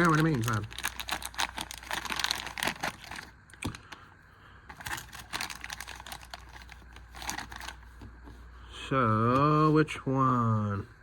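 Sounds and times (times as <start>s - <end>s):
packaging crinkling: 0.0s - 4.0s, 4.7s - 8.0s.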